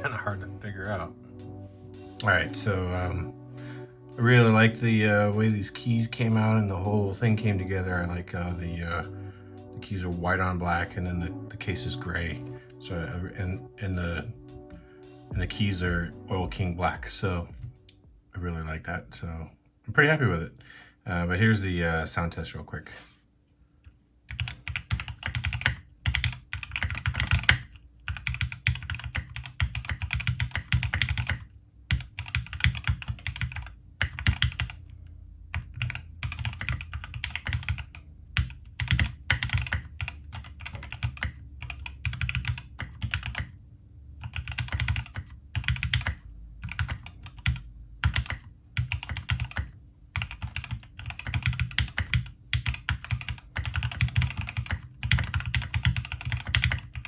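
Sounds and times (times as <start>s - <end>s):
mechanical keyboard typing: 24.3s - 34.8s, 35.5s - 43.6s, 44.2s - 57.0s.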